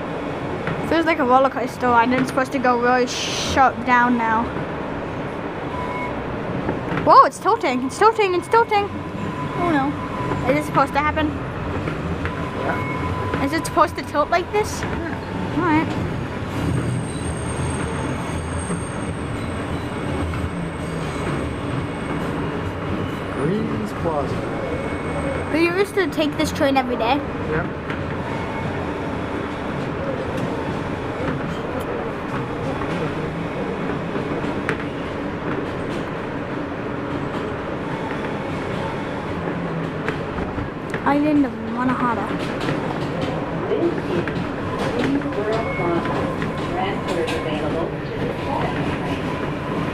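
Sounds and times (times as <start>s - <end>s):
train wheels rumbling: 0.0s - 49.9s
high wheel squeal: 5.7s - 6.2s, 7.6s - 10.8s, 12.3s - 14.2s, 15.1s - 25.8s, 28.2s - 29.6s, 45.4s - 47.9s.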